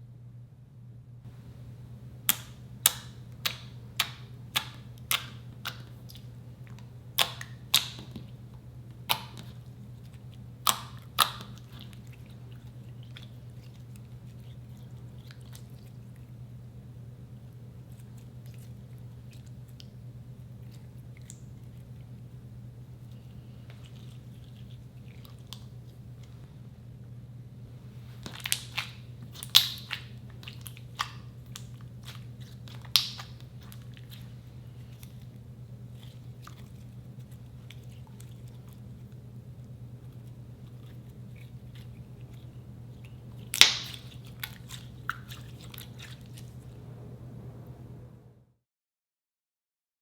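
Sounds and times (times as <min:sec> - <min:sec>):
steady low hum: 0:00.0 - 0:48.6
slime clicking and popping: 0:02.3 - 0:08.3, 0:09.0 - 0:12.1, 0:28.2 - 0:34.2, 0:43.4 - 0:46.1.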